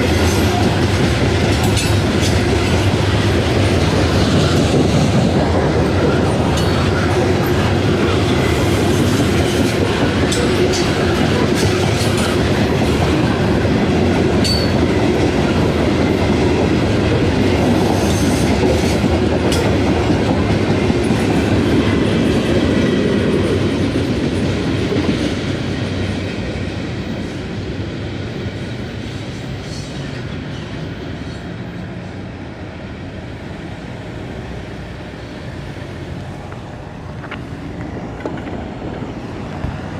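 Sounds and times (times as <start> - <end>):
freight train cars rolling: 0.0 - 39.9.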